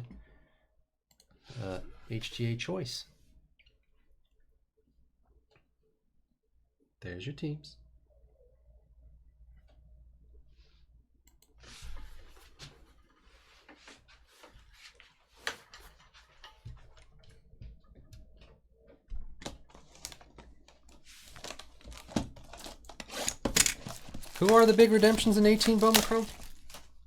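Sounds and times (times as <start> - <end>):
packs rustling: 19.6 - 27.0.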